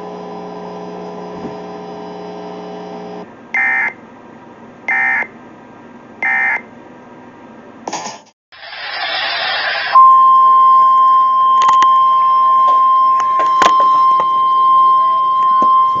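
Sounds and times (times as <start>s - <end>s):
steady electronic hum: 8.9s - 16.0s.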